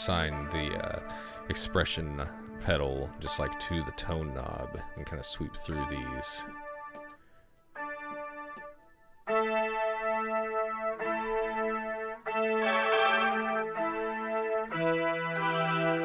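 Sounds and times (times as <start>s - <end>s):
synth-toned electric guitar chords: 0.0s - 16.0s.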